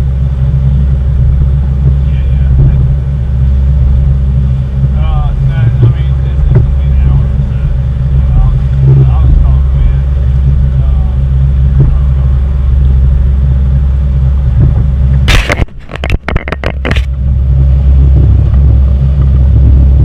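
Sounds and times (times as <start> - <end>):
boat engine droning: 0.0 - 20.0
sharp crackling burst: 15.2 - 17.1.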